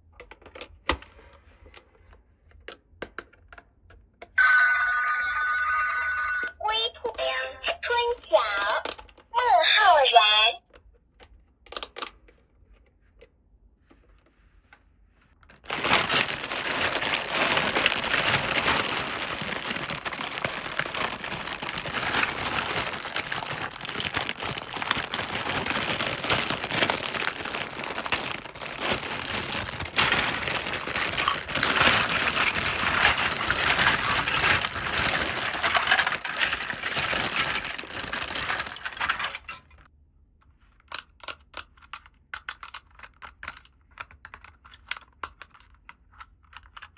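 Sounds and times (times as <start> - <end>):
plastic packaging crinkling: 15.4 - 39.9.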